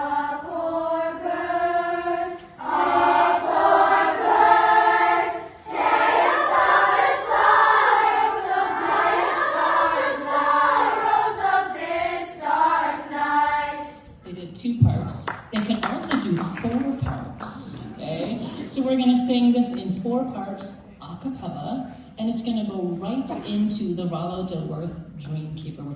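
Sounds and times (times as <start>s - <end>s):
chorus singing: 0.0s - 14.2s.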